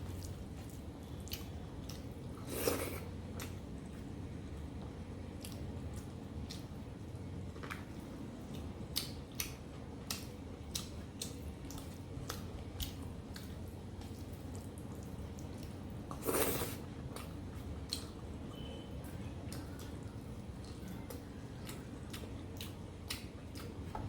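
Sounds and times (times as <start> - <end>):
wet chewing and lip smacks: 0.0 - 2.8, 5.4 - 6.8, 7.5 - 16.5, 17.1 - 18.2, 19.5 - 24.0.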